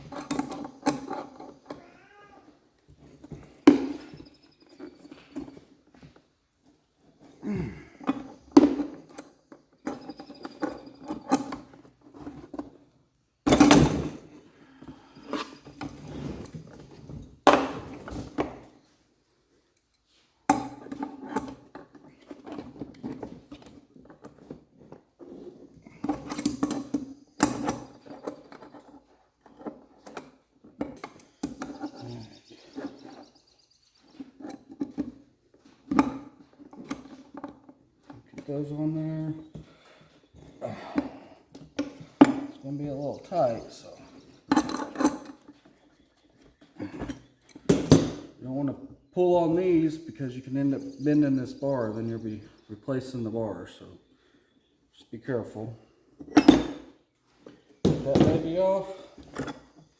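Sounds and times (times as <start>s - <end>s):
wrenches clinking on metal: 0.0s - 1.9s, 8.0s - 12.6s, 13.4s - 14.5s, 19.8s - 33.2s, 43.2s - 48.2s, 56.2s - 57.0s
tools thunking: 2.9s - 5.8s, 7.9s - 12.8s, 13.4s - 14.5s, 15.3s - 18.8s, 20.5s - 32.0s, 40.4s - 42.6s, 44.0s - 45.8s, 46.6s - 48.4s, 56.2s - 59.9s.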